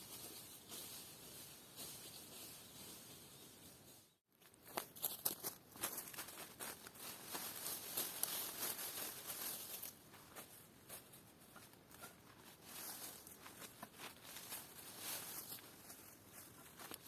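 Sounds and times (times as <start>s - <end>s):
rustling and crackling: 4.4s - 17.0s.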